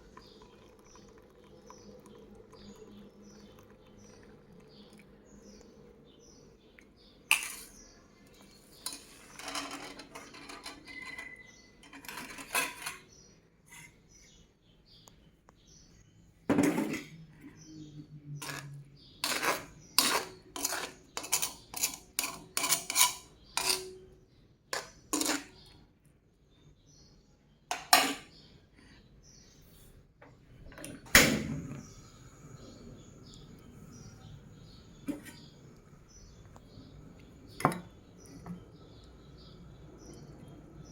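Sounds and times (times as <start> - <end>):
utensils clinking against dishes: 8.4 - 13.1, 18.4 - 24.0, 24.8 - 25.6, 27.7 - 28.3.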